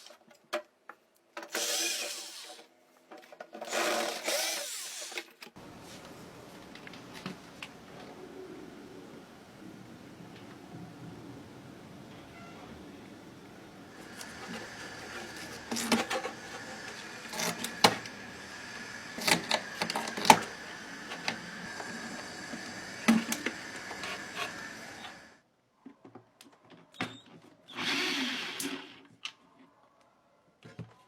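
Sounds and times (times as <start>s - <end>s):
steady hum with high tone: 5.6s - 25.4s
hissing scrape: 13.9s - 25.4s
clicks and knocks of fan parts: 14.0s - 24.6s.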